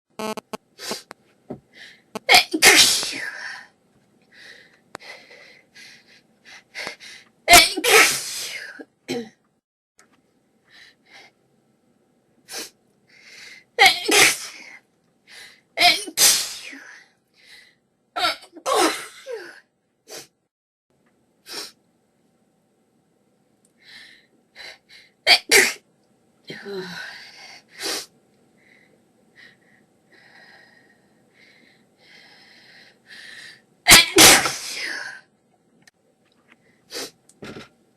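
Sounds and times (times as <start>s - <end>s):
person sneezing: 2.2s - 3.3s, 7.5s - 9.3s, 33.9s - 35.0s.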